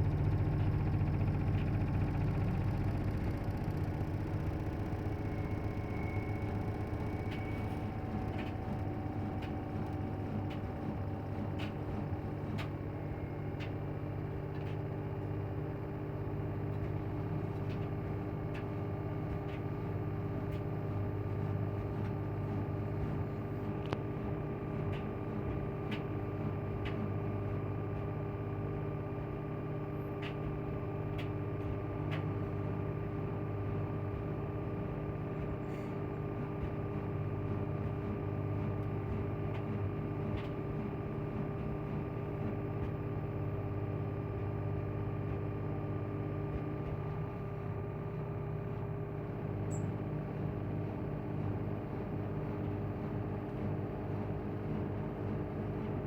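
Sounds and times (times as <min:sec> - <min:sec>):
constant whine: 0:00.0 - 0:13.7
washing machine spinning: 0:00.0 - 0:56.0.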